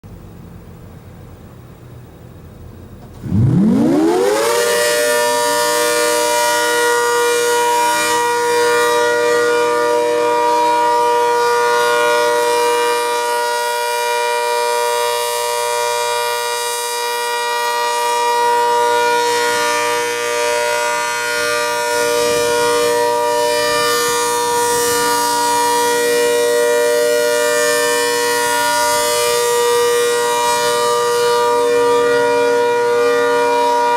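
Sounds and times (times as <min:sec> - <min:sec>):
warning siren: 0:03.0 - 0:33.9.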